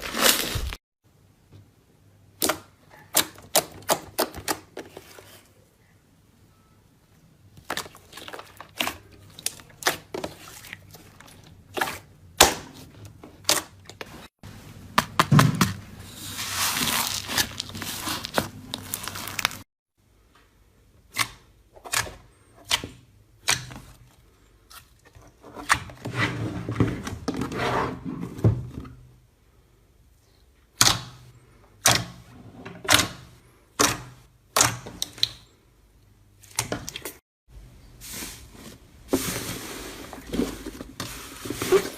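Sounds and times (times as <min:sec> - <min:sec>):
slime crackling: 0:16.4 - 0:19.6.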